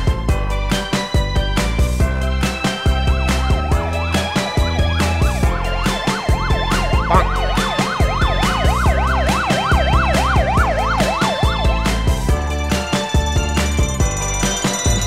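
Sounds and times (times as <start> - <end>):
background music with steady beat: 0.0 - 15.0
electronic siren wailing: 5.8 - 11.8.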